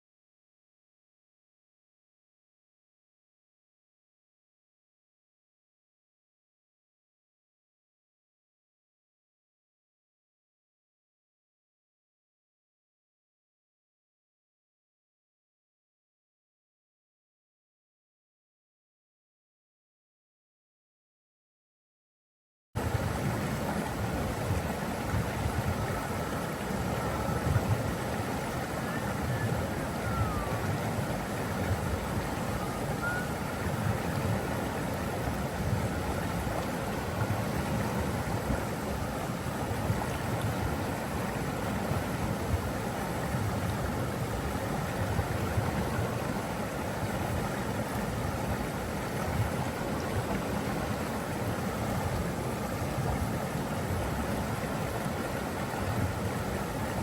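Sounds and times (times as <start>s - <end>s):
waterfall roaring: 25.9s - 35.4s.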